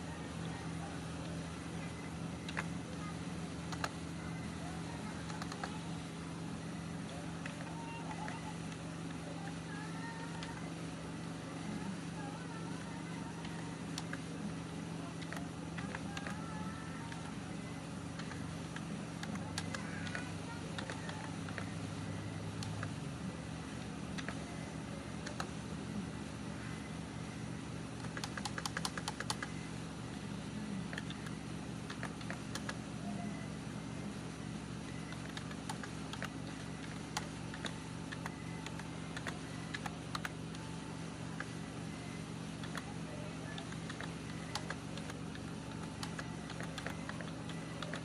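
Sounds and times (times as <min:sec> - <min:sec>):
keyboard keystrokes: 0:28.0 - 0:29.6, 0:35.1 - 0:40.7.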